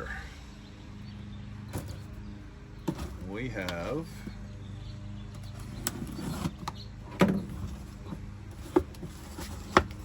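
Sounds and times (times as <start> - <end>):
cardboard knocks and scrapes: 5.9 - 10.0.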